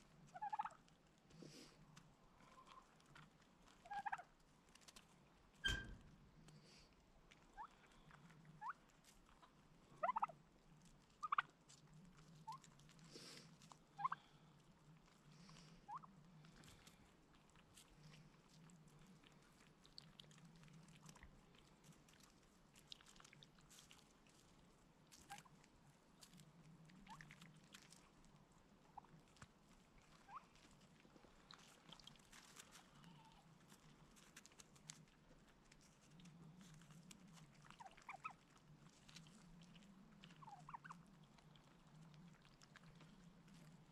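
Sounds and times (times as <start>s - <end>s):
turkeys calling: 0.3s - 0.8s, 3.8s - 4.3s, 7.6s - 8.8s, 9.4s - 10.4s, 11.2s - 11.5s, 12.4s - 12.6s, 14.0s - 14.3s, 15.5s - 16.2s, 25.2s - 25.5s, 30.2s - 30.6s, 37.8s - 38.4s, 40.3s - 42.0s.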